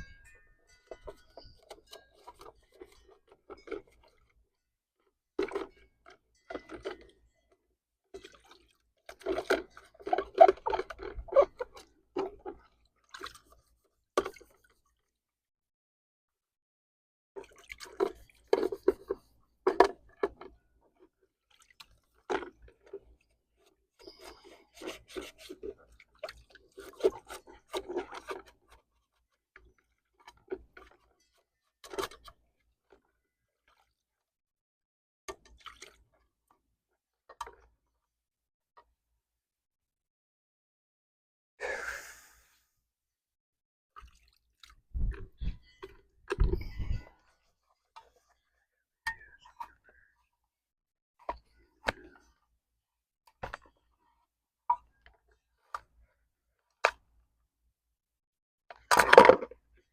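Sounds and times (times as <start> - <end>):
water dripping and splashing: 44.0 - 45.6.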